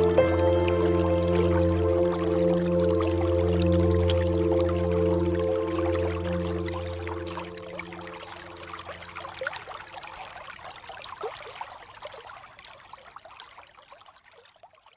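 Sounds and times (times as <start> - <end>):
soft music tones: 0.0 - 9.6
water trickling and bubbling: 0.0 - 14.9.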